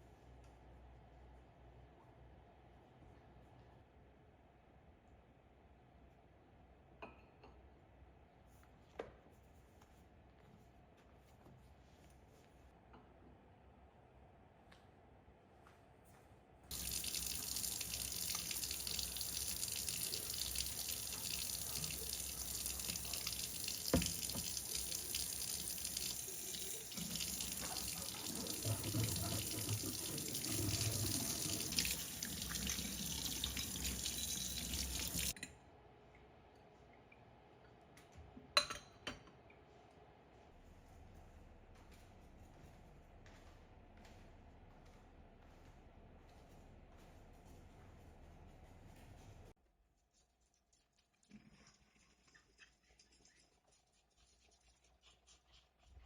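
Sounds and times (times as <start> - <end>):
tap water running into sink: 16.7 - 35.4.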